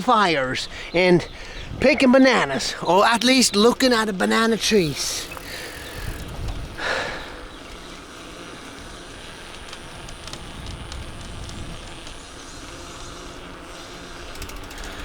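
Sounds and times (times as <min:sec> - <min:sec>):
distant engine hum: 0:00.0 - 0:15.0
outdoor background noise: 0:00.0 - 0:15.0.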